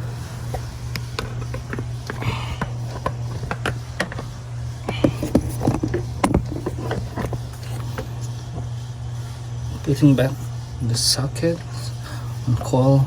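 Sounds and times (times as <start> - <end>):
hand tools clicking on plastic: 0.0 - 8.4
steady low hum: 0.0 - 13.0.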